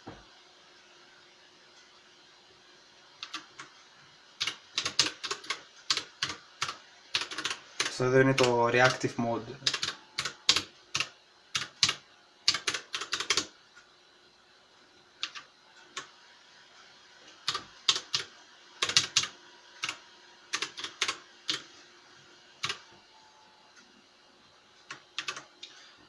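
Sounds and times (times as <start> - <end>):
mechanical keyboard keys pressed: 3.2 - 3.6, 4.4 - 9.0, 9.6 - 13.5, 17.5 - 21.6, 24.9 - 25.5.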